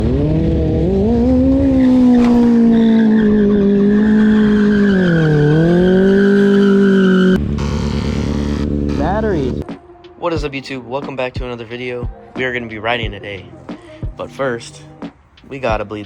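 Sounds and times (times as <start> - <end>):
motorcycle engine at high revs: 0.0 - 9.6
tyre squeal: 1.8 - 9.6.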